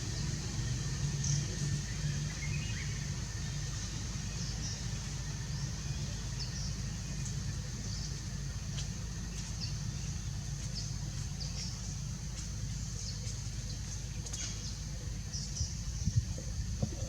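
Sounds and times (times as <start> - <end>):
low steady rumble: 0.0 - 17.0.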